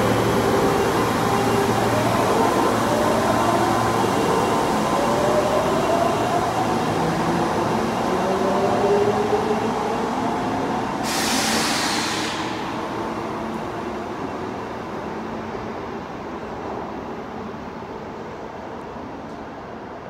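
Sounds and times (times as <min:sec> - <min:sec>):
subway train motors whining: 0:00.0 - 0:20.0
burst of air hiss: 0:11.0 - 0:12.6.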